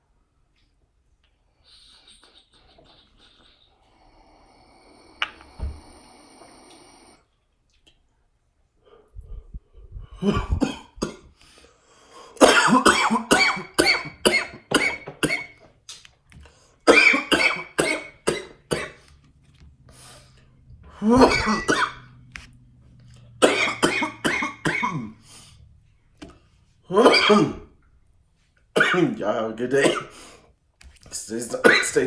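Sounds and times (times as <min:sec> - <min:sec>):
man coughing hard: 0:10.2 - 0:11.3, 0:12.4 - 0:15.5, 0:16.9 - 0:19.0, 0:21.0 - 0:22.0, 0:23.4 - 0:25.2, 0:26.9 - 0:27.6, 0:28.8 - 0:29.1, 0:29.8 - 0:30.2, 0:31.5 - 0:32.0.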